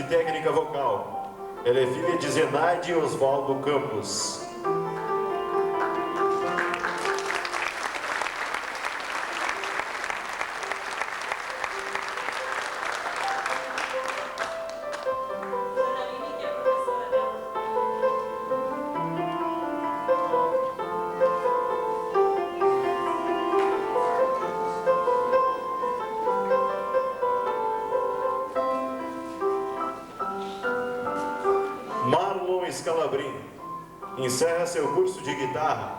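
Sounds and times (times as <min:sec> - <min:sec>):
instrumental music: 0:00.0 - 0:35.9
audience applauding: 0:04.9 - 0:15.6.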